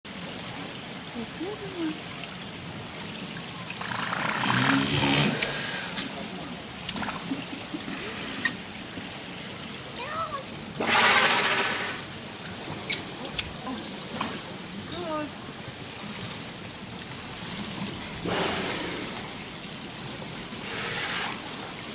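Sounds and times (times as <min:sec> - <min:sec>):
running water: 0:00.1 - 0:21.9
walrus blowing blasts: 0:18.2 - 0:19.2.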